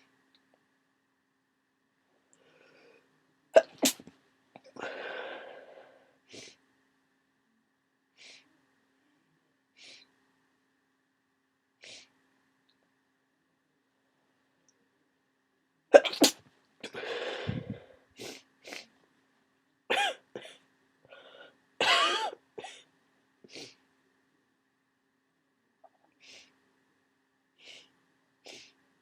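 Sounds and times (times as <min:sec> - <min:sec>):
faint steady hum: 0:00.0 - 0:29.0
noisy breath: 0:02.3 - 0:03.1, 0:04.7 - 0:06.6, 0:08.1 - 0:08.5, 0:09.8 - 0:10.2, 0:11.8 - 0:12.2, 0:16.9 - 0:18.9, 0:21.0 - 0:21.6, 0:26.2 - 0:26.6, 0:27.6 - 0:28.8
person coughing and sneezing: 0:03.6 - 0:04.0, 0:15.9 - 0:17.7, 0:19.9 - 0:20.6, 0:21.8 - 0:22.8
congested nose sniffs: 0:17.2 - 0:18.9, 0:23.5 - 0:23.8, 0:27.6 - 0:28.8.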